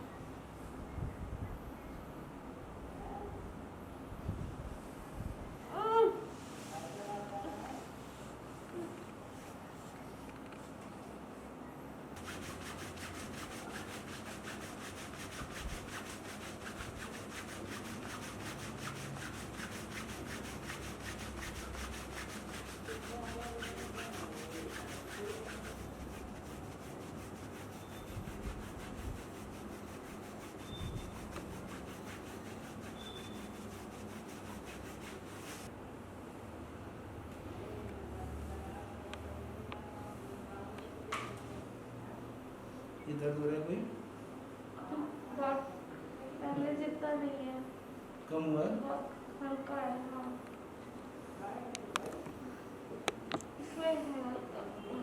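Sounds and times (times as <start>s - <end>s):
hands rubbing skin rhythmically: 12.2s - 35.7s.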